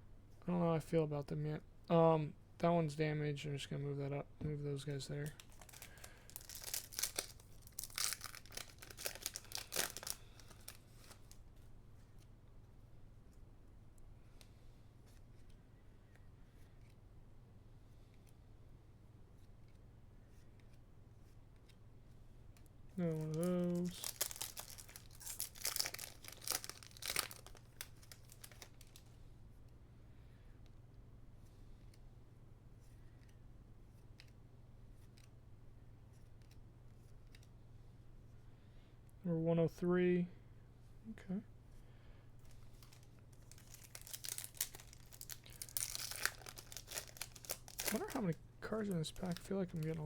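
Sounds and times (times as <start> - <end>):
foil pack tearing and crinkling: 5.2 - 11.4, 23.0 - 29.1, 42.5 - 48.4, 49.1 - 50.0.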